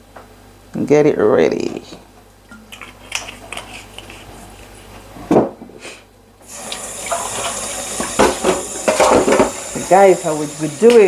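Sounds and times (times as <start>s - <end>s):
tap running into sink: 6.6s - 11.0s
dish set down knock: 8.0s - 9.6s.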